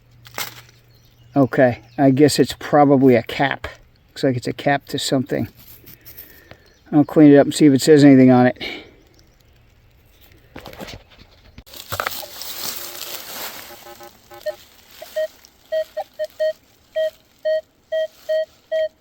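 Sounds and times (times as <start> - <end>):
rustling handling noise: 5.3 - 6.7, 9.1 - 19.0
metal detector beeping: 11.9 - 19.0.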